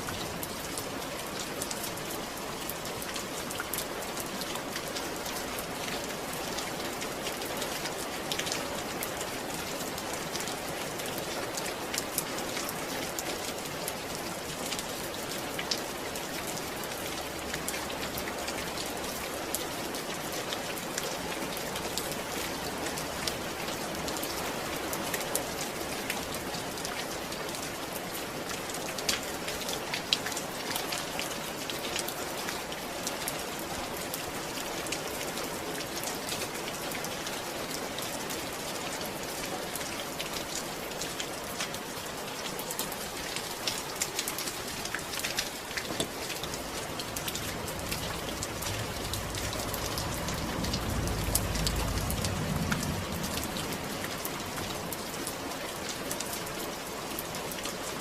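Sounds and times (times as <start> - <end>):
steady rain falling: 0.0 - 58.0
deep low rumble: 46.5 - 54.9.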